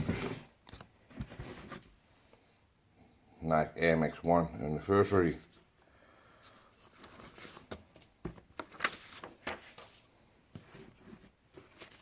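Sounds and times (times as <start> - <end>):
paper and packaging rustling: 6.7 - 12.0.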